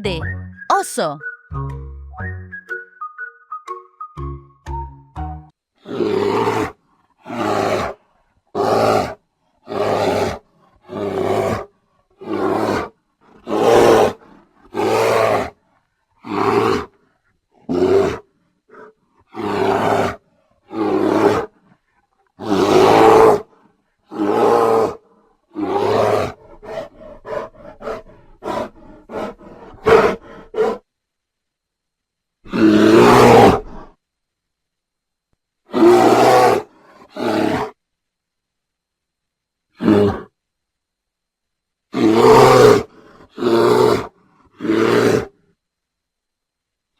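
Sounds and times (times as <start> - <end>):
bear roaring: 5.8 - 15.6, 16.2 - 17.0, 17.6 - 21.6, 22.4 - 23.5, 24.1 - 30.8, 32.5 - 33.9, 35.7 - 37.8, 39.8 - 40.3, 41.9 - 45.4.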